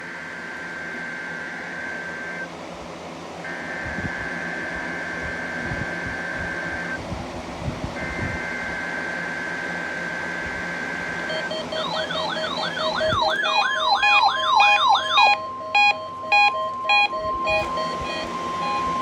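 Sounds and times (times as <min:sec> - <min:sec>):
two-tone digital data signal: 0:11.2 - 0:19.0.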